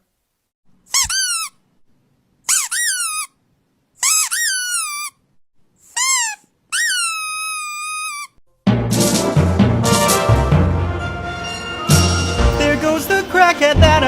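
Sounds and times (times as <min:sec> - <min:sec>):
high-pitched squeaks: 0:00.9 - 0:01.6, 0:02.5 - 0:03.4, 0:04.0 - 0:05.2, 0:05.9 - 0:08.4.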